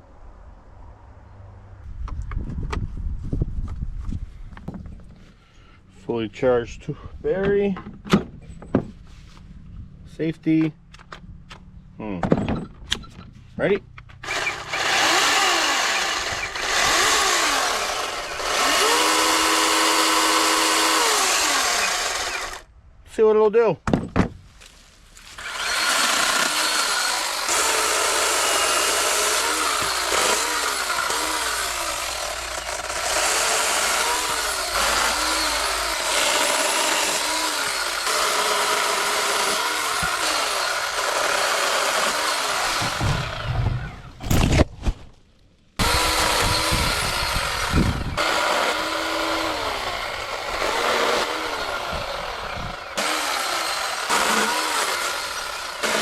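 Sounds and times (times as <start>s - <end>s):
electric chainsaw cutting wood: 14.2s - 22.7s, 25.3s - 44.1s, 45.8s - 56.0s
heavy thuds: 42.6s - 45.2s.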